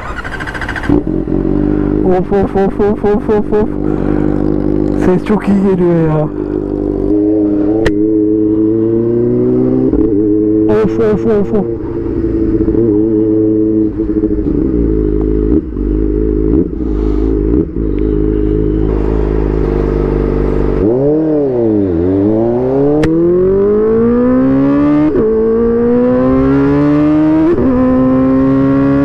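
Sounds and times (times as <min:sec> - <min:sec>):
motorcycle engine whine: 0:00.0 - 0:29.0.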